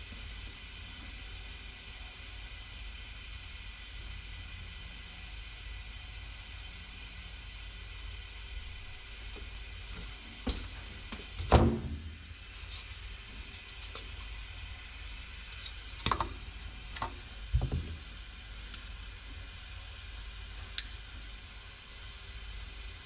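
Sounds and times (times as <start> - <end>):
low hum and hiss: 0.0 - 23.0
sharp click: 20.8 - 21.0.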